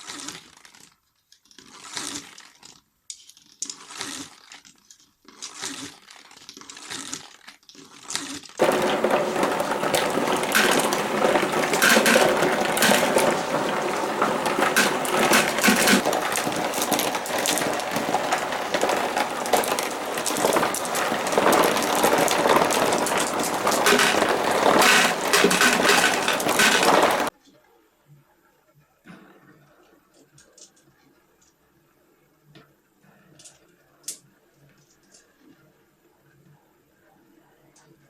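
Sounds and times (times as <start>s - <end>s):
marbles rolling and clacking: 8.6s - 27.3s.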